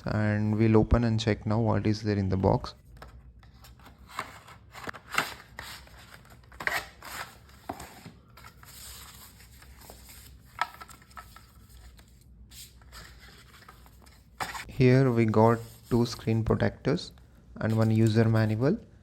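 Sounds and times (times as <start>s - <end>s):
card and plastic rustling: 2.9s - 14.7s.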